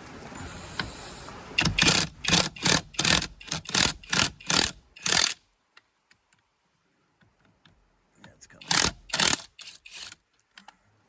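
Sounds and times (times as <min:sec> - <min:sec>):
impact wrench bursts: 0:01.6 - 0:05.4, 0:08.6 - 0:10.2.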